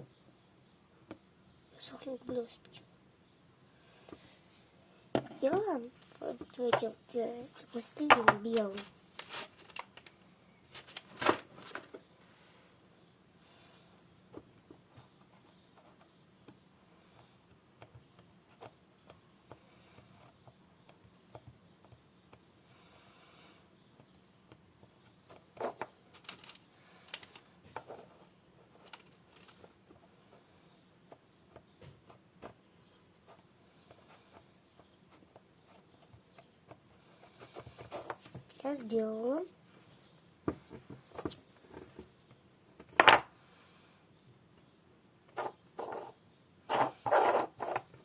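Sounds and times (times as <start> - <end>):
hands handling crafting materials: 24.0 - 30.1.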